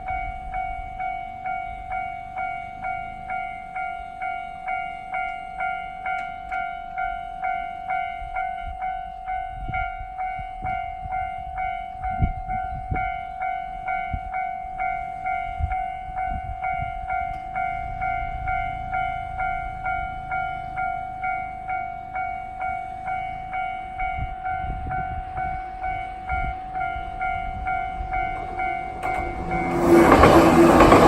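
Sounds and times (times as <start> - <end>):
level crossing warning bell: 0.0 - 31.0
train rumbling: 4.7 - 31.0
train wheels thumping: 28.0 - 31.0.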